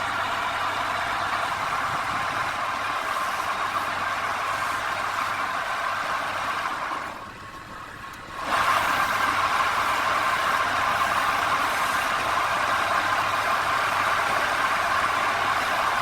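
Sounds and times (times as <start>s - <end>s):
lathe motor hum: 0.0s - 16.0s.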